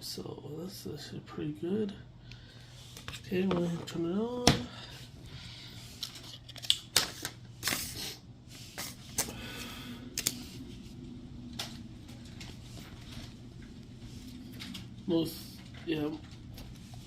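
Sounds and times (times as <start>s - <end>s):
faint low hum: 0.0s - 17.0s
smartphone packaging handled: 5.9s - 8.0s.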